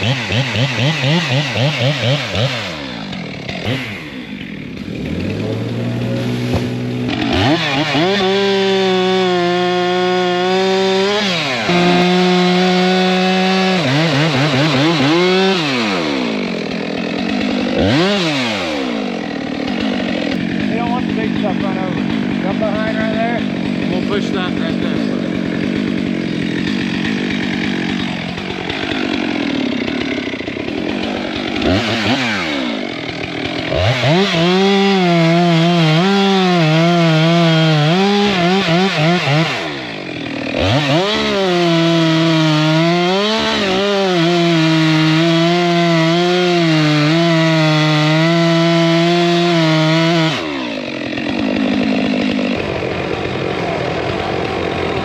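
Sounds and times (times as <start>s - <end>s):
chainsaw cutting wood: 0.0s - 55.0s
rough low engine noise: 2.9s - 7.7s.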